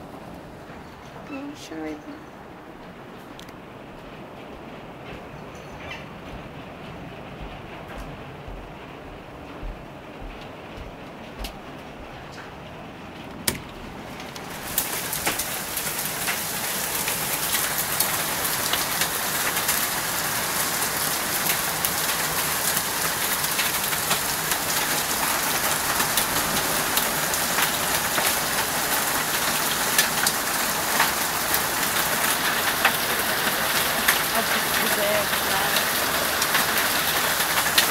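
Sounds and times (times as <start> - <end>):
hailstones clicking on hard surfaces: 13.4 - 37.9
heavy rain hissing: 13.8 - 37.9.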